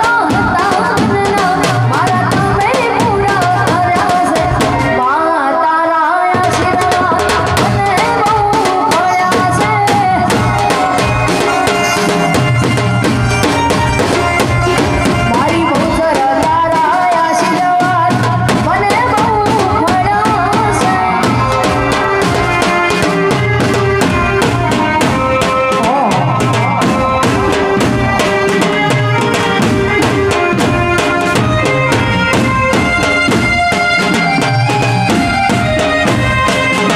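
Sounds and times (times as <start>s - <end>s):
fast steady drumming: 0.0s - 5.2s, 6.3s - 36.9s
folk dance music: 0.0s - 36.9s
wavering melody line: 7.8s - 16.8s, 19.1s - 36.9s.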